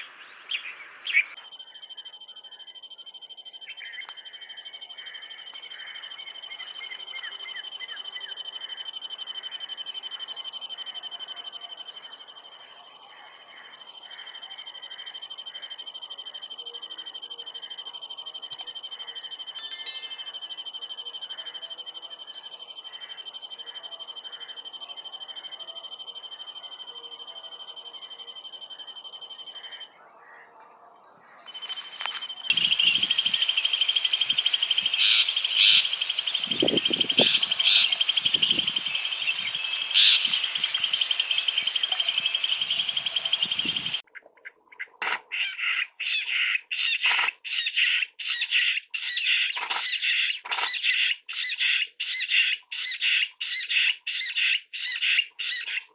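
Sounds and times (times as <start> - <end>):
scattered bird notes: 16.4 - 24.5, 31.2 - 44.0
rapid repeated sharp bird notes: 31.5 - 44.1.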